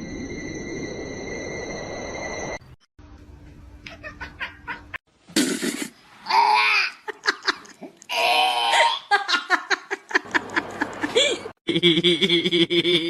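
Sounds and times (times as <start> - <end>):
person laughing hard: 8.8 - 13.0.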